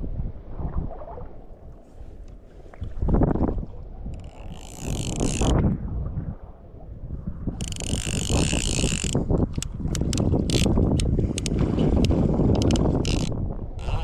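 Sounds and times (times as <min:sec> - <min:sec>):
wind buffeting microphone: 0:00.0 - 0:14.0
fly reel ratchet buzzing: 0:04.2 - 0:05.5, 0:07.6 - 0:09.2, 0:10.0 - 0:10.7, 0:12.6 - 0:14.0.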